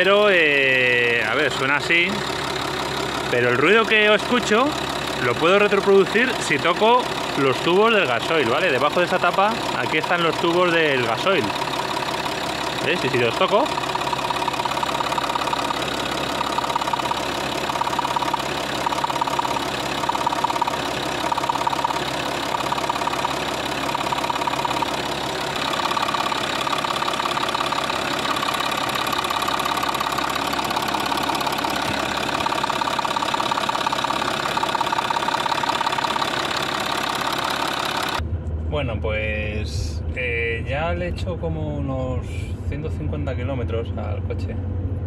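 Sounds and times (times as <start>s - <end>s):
diesel engine idling: 0.0s - 38.2s
injector tapping knock: 13.6s - 38.2s.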